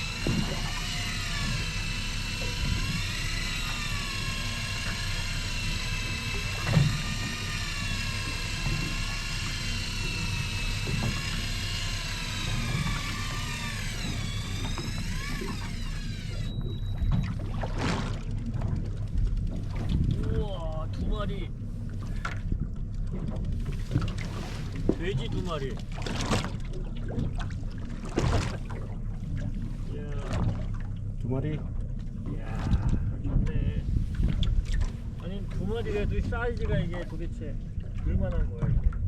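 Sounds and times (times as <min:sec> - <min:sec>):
electric fishing reel motor whine: 0:00.0 - 0:17.8
boat engine drone: 0:00.0 - 0:39.0.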